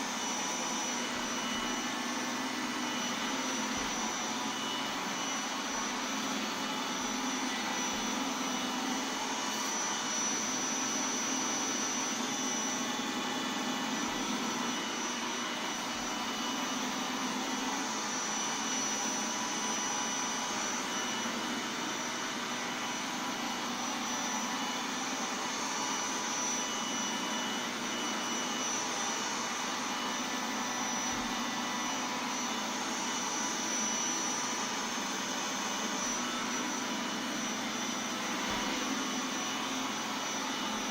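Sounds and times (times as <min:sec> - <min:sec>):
robot vacuum whirring: 0:00.0 - 0:40.9.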